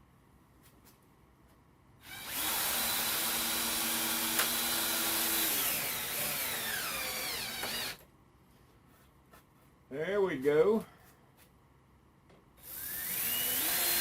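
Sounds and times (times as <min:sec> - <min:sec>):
power drill driving screw: 0:02.0 - 0:08.0, 0:12.6 - 0:14.0.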